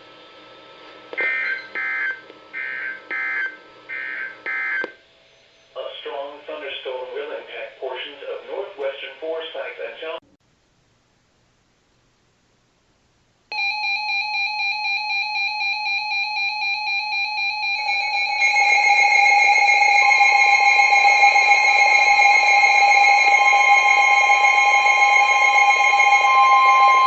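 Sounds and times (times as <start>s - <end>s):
rapid alarm beeping: 1.2s - 4.9s, 13.5s - 27.0s
weather radio alarm tone: 1.2s - 4.9s, 13.6s - 27.0s.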